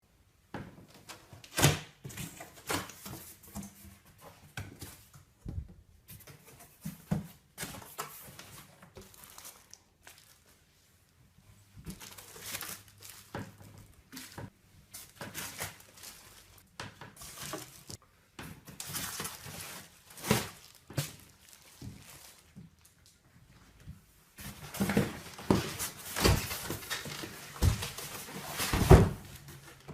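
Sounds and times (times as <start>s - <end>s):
objects being handled: 11.6s - 29.9s.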